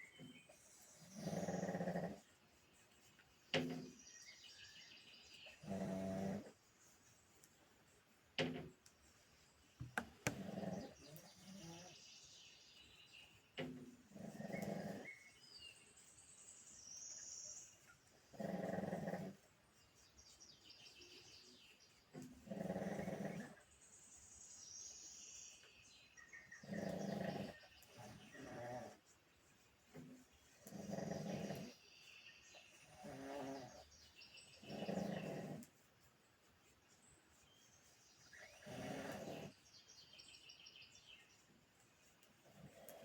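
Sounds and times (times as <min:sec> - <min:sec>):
dog snoring: 0:00.9 - 0:02.3, 0:05.6 - 0:06.6, 0:09.9 - 0:12.0, 0:14.1 - 0:15.2, 0:18.3 - 0:19.4, 0:22.4 - 0:23.6, 0:26.6 - 0:29.0, 0:30.6 - 0:31.8, 0:32.8 - 0:33.9, 0:34.6 - 0:35.7, 0:38.4 - 0:39.6.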